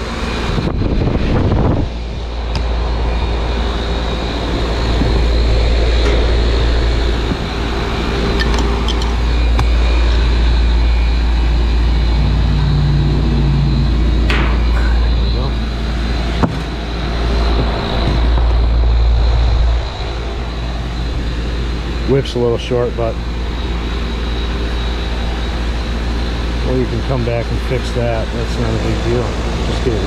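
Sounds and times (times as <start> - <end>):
air rushing: 0.0 - 22.2
air conditioner unit drone: 0.0 - 30.0.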